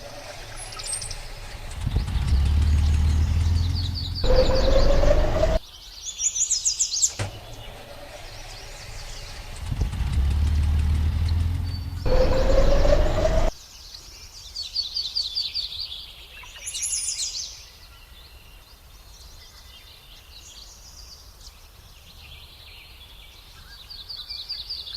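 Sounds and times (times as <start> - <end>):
birds chirping in trills: 0.0 - 5.6, 7.3 - 13.5
motor running: 0.0 - 5.6, 7.2 - 13.5.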